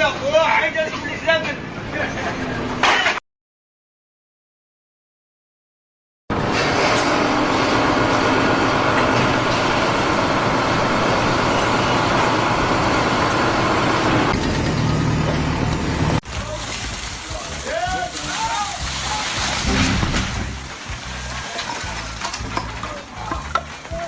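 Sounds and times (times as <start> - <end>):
motor vehicle noise: 6.3 - 24.0.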